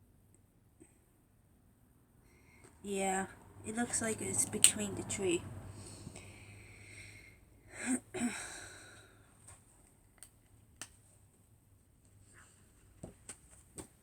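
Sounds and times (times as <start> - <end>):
woman sighing: 6.9 - 9.2.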